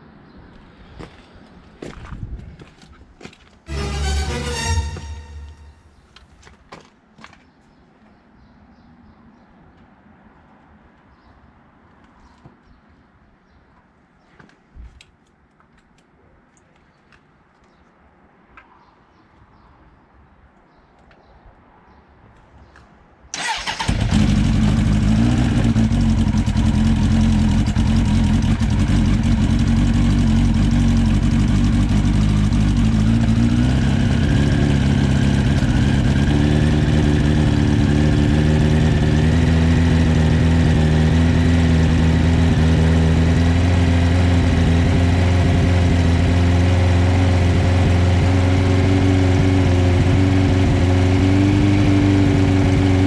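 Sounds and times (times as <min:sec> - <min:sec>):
motorcycle engine idling: 0:23.5 - 0:36.0.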